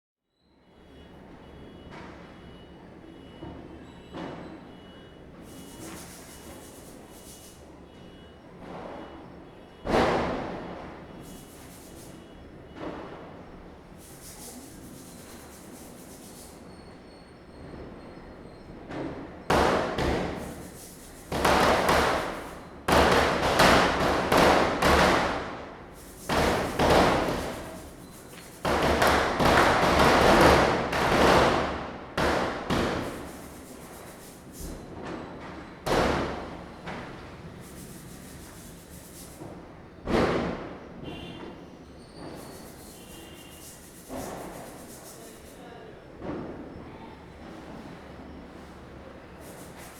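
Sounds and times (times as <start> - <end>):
firecrackers bursting: 5.4 - 7.6, 9.9 - 13.2, 13.9 - 16.6, 19.5 - 41.4, 42.2 - 45.6, 49.2 - 49.9.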